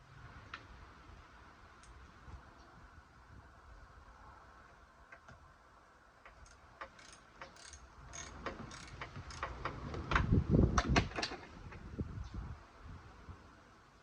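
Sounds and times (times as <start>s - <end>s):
ratchet wrench clicking: 6.3s - 9.8s.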